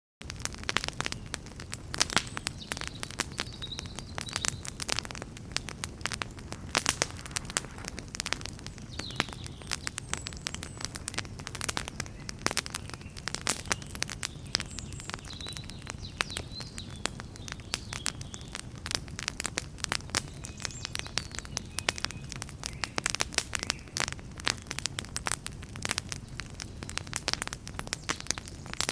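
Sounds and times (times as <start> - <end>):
campfire crackling: 0.2 - 28.9
sharp snaps and pops: 0.2 - 28.9
low rushing noise: 6.1 - 9.0.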